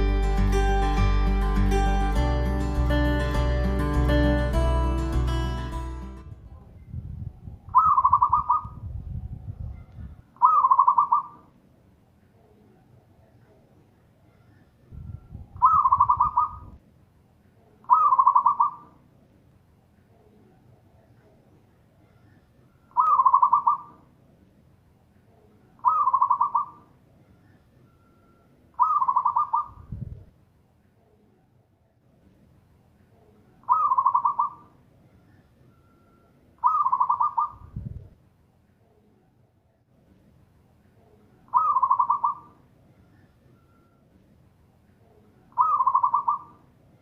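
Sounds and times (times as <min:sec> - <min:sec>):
dove cooing: 0:07.7 - 0:08.8, 0:10.4 - 0:11.5, 0:15.6 - 0:16.8, 0:17.8 - 0:19.0, 0:22.0 - 0:24.0, 0:25.8 - 0:26.9, 0:28.8 - 0:29.9, 0:33.6 - 0:34.7, 0:36.6 - 0:37.8, 0:41.5 - 0:43.9, 0:45.5 - 0:46.7.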